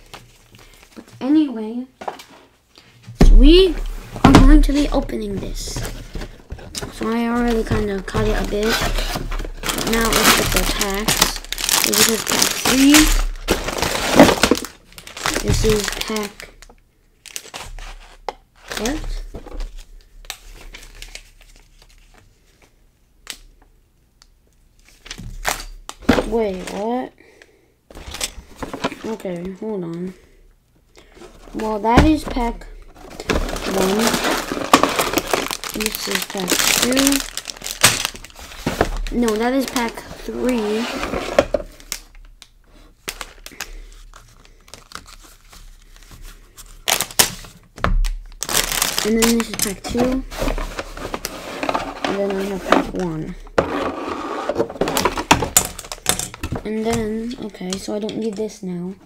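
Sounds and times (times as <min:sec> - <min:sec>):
plastic bags crinkling: 0:04.4 - 0:22.7, 0:31.1 - 0:53.6, 0:54.6 - 0:58.5.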